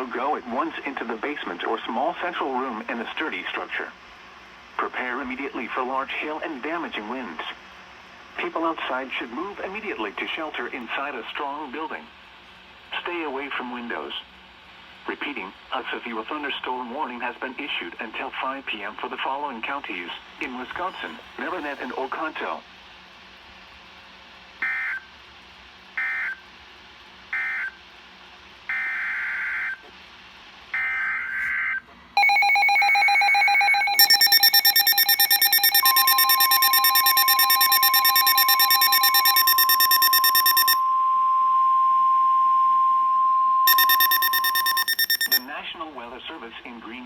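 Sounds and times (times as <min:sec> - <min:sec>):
raspy data bursts: 0:32.2 - 0:40.8, 0:43.7 - 0:45.4
pulsing electronic alarm tone: 0:32.2 - 0:41.0, 0:43.7 - 0:45.4
steady single-pitch warning tone: 0:32.2 - 0:45.4.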